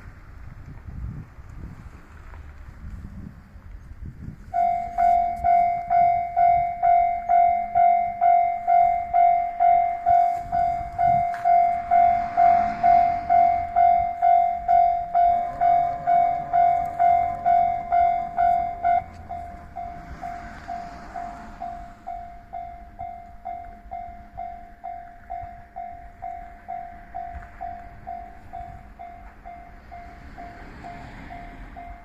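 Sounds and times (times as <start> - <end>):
level crossing warning alarm: 4.4 - 32.0.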